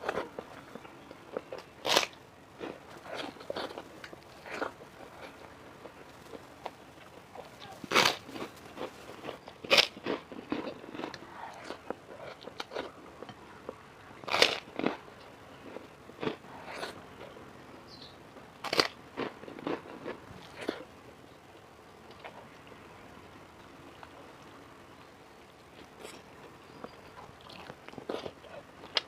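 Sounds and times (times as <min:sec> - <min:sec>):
person chewing crunchy food: 0:00.0 - 0:17.4, 0:18.6 - 0:20.9, 0:25.8 - 0:29.0
loud crunches of biting: 0:01.3 - 0:13.0, 0:14.2 - 0:15.0, 0:18.6 - 0:20.8.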